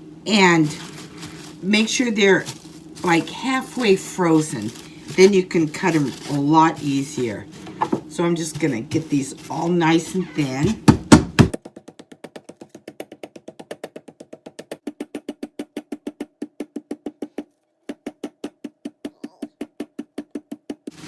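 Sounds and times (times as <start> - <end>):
meat mallet pounding on board: 10.8 - 17.2.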